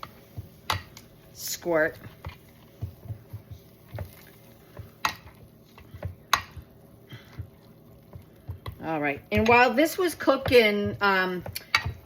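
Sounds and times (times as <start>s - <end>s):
masher thudding in soft food: 2.0s - 12.0s.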